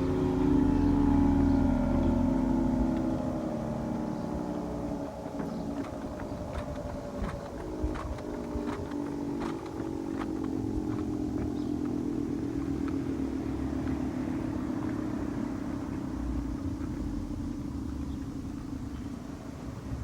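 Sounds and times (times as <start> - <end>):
dual-tone siren winding down: 0.0 - 14.2.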